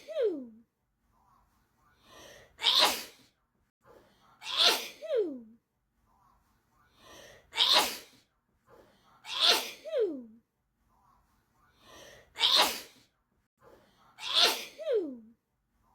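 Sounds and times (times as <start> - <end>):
person sneezing: 2.6 - 3.2, 4.4 - 5.4, 7.6 - 8.2, 9.3 - 10.2, 12.4 - 13.0, 14.2 - 15.2.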